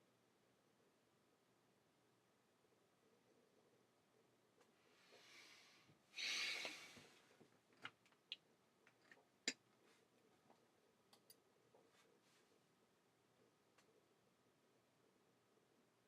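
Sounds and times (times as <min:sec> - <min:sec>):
person breathing in: 0:04.9 - 0:07.2
sharp exhale through nose: 0:05.0 - 0:07.2
faint clicks: 0:10.4 - 0:11.9.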